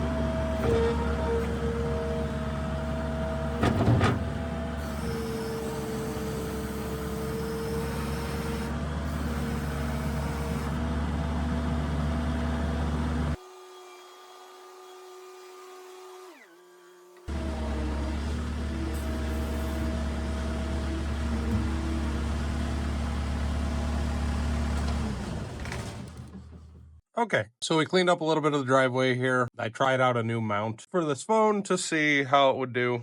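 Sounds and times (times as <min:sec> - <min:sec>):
diesel engine running: 0:00.0 - 0:13.4, 0:17.3 - 0:27.0.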